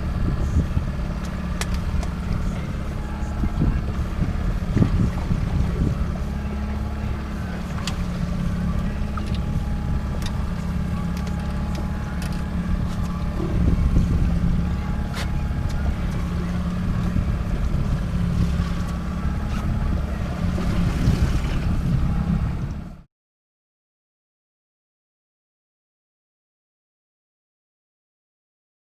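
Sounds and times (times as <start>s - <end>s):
wind on microphone: 0.0s - 11.7s, 12.4s - 23.0s
boat engine running: 0.0s - 23.1s.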